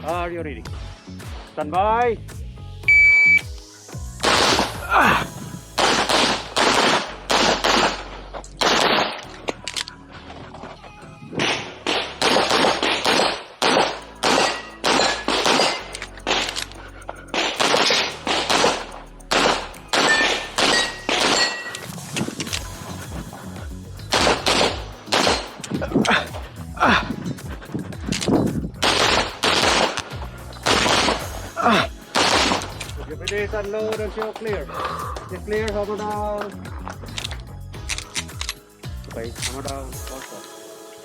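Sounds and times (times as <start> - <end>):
pistol shots: 4.2 - 4.8, 5.8 - 9.3, 11.4 - 16.6, 17.4 - 21.9, 24.1 - 25.8, 28.8 - 31.2, 32.2 - 32.9.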